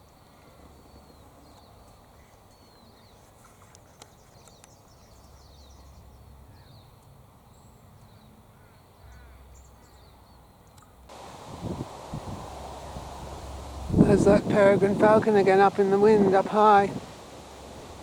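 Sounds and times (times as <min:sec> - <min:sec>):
small birds chirping: 0:00.0 - 0:11.0
wind rumble: 0:11.1 - 0:18.0.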